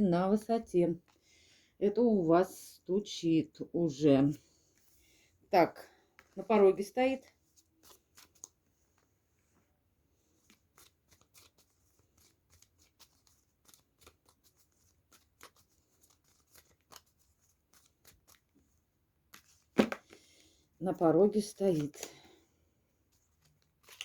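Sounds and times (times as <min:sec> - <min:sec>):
cards being shuffled: 0:07.5 - 0:09.1, 0:10.3 - 0:18.6, 0:19.3 - 0:20.4, 0:21.5 - 0:22.3, 0:23.1 - 0:24.0
card snapping: 0:19.3 - 0:20.2.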